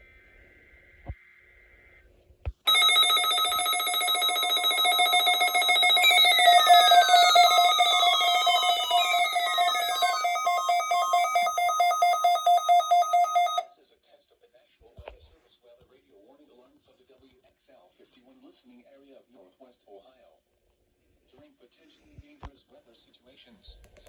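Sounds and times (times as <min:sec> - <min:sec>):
falling electronic tone sweeps: 0:02.7 - 0:13.6
rapidly pulsing electronic beeping: 0:02.7 - 0:13.6.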